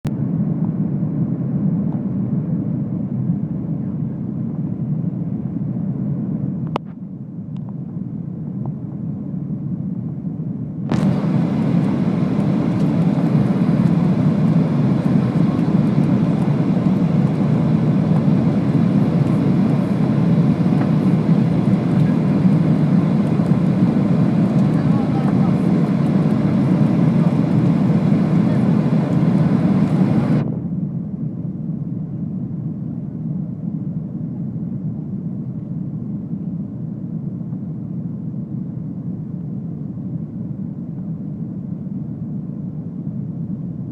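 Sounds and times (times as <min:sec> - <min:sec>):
jet airliner rumble: 0:00.0 - 0:43.9
click: 0:06.7 - 0:07.8.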